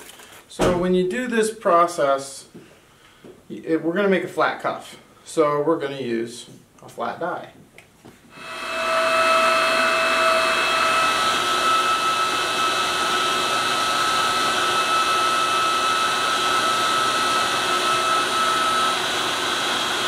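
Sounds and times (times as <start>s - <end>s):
lower tone: 8.4s - 19.4s
hydraulic press whining: 8.4s - 20.0s.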